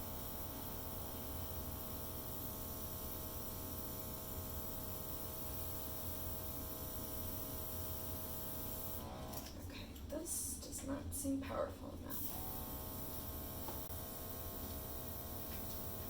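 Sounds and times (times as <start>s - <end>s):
airbrush compressor humming: 0.0s - 9.5s, 12.2s - 16.0s.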